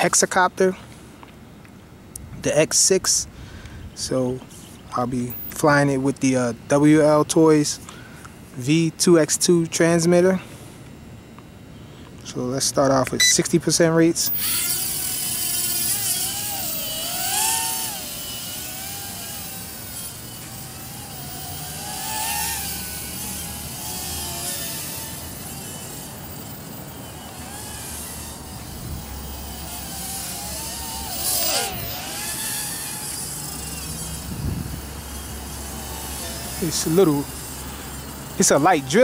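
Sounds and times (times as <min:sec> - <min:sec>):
drone motors whining: 0:13.1 - 0:39.0
wind rumble on microphone: 0:28.6 - 0:29.2, 0:34.2 - 0:35.0.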